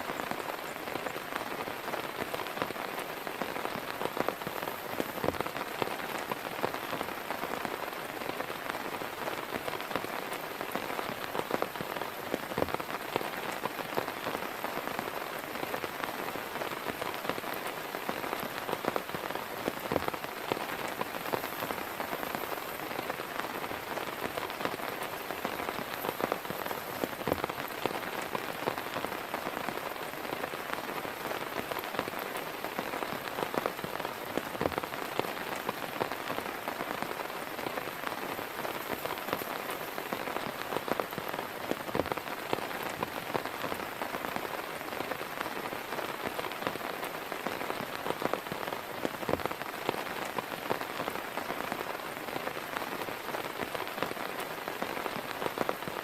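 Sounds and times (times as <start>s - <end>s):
heavy rain pattering: 0.0s - 56.0s.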